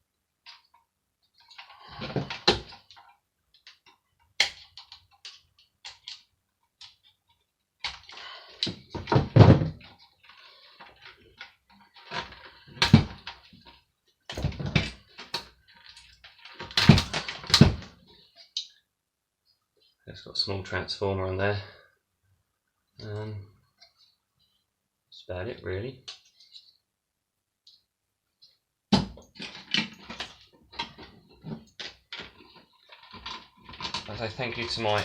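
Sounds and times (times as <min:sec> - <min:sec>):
hand dryer parts clattering: 0:14.3 - 0:17.8, 0:29.4 - 0:35.0.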